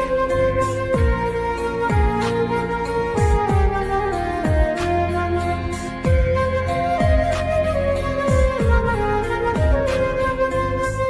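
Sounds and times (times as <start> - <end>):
flute melody: 0.0 - 11.0.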